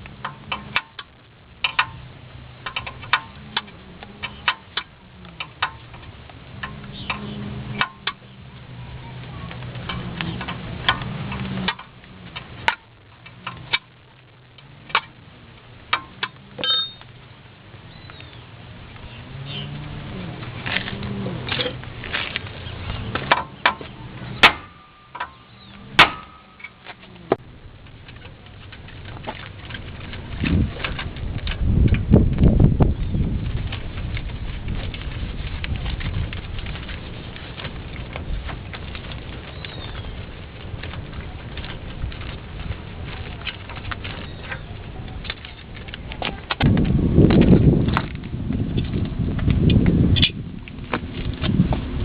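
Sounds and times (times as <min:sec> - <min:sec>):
low hum: 0:00.0 - 0:52.0
hand tools clinking on metal: 0:15.9 - 0:17.1.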